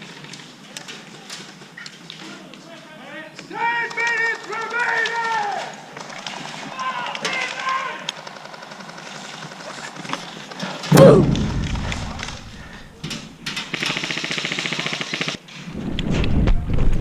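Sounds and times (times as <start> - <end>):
loud thump: 10.9 - 12.8
airsoft rifle full-auto bursts: 13.7 - 15.4.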